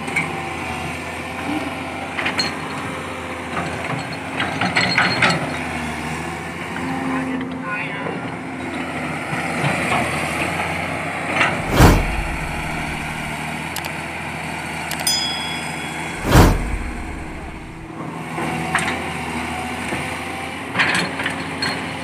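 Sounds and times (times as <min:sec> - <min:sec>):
loud deep thumps: 0:11.6 - 0:13.3, 0:16.2 - 0:17.9.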